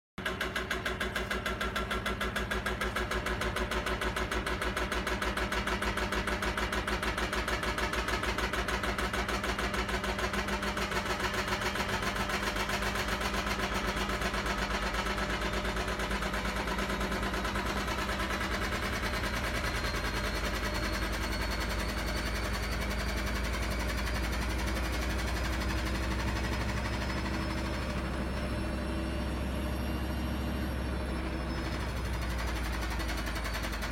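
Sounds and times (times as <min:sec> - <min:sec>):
engine running with fast pulse: 0:10.8 - 0:33.9.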